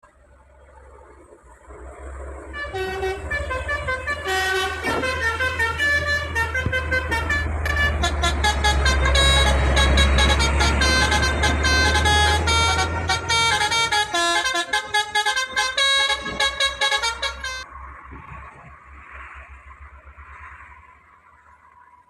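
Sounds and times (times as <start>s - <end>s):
engine rumble: 0.0s - 22.0s
bus musical horn: 2.4s - 17.6s.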